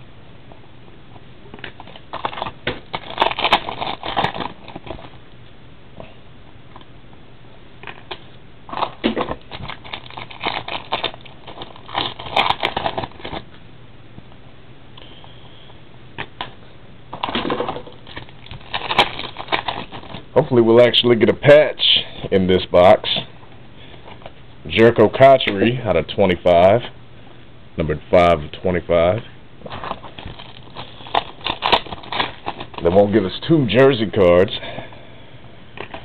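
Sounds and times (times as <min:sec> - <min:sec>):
card packaging crinkling: 0:01.6 - 0:05.2, 0:07.8 - 0:13.5, 0:17.1 - 0:20.3, 0:29.6 - 0:33.9.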